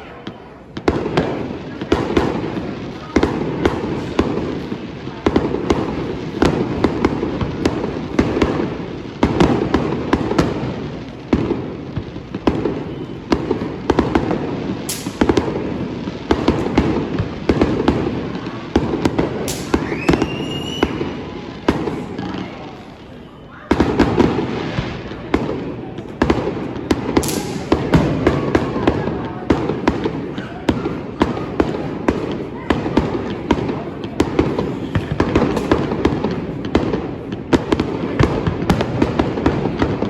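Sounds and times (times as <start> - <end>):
fireworks bangs and crackling: 0.0 - 40.0
firework shell whistle: 14.9 - 15.4, 19.5 - 21.9.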